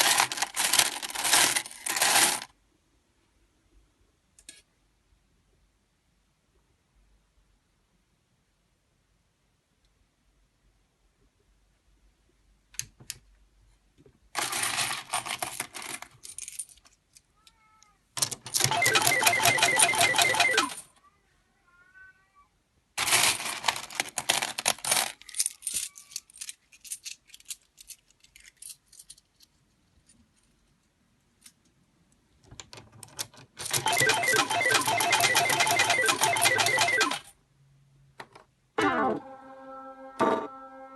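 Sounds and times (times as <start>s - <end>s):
metallic rattling of tokens pouring: 0.0s - 2.5s, 14.4s - 16.8s, 23.0s - 28.8s.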